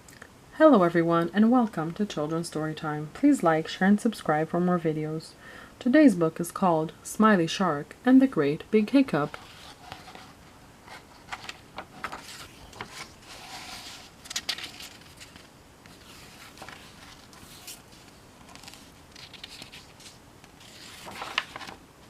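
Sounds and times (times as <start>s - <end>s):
book pages rustling and turning: 9.2s - 21.8s.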